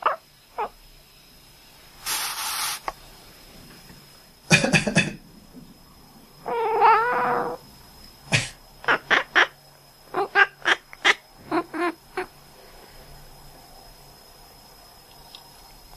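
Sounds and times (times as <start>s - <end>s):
short hissing burst: 2.0s - 2.9s
cat meowing: 6.5s - 7.6s.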